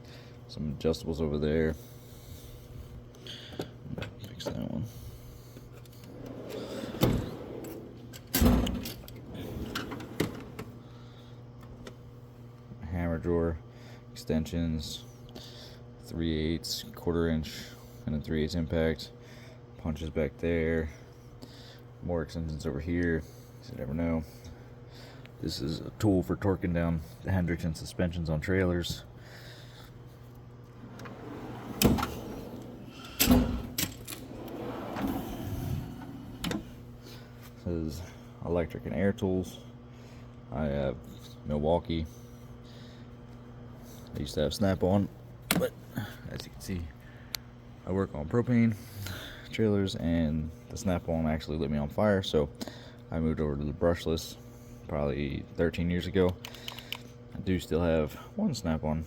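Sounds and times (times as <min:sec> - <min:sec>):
drawers shutting and opening: 0:06.0 - 0:10.8, 0:30.8 - 0:36.8.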